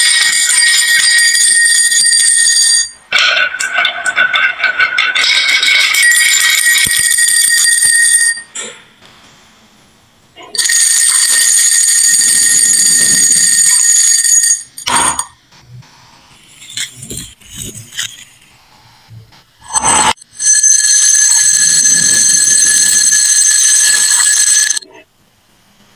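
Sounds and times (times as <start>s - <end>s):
marbles ringing in marble run: 0.0s - 8.4s, 10.6s - 15.2s, 19.8s - 24.8s.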